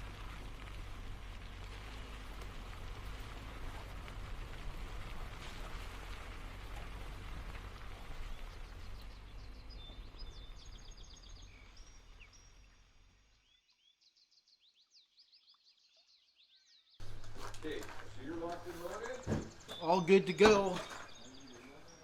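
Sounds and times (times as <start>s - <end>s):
low rumbling noise: 0.0s - 12.3s, 17.0s - 20.0s
small birds chirping: 0.0s - 22.0s.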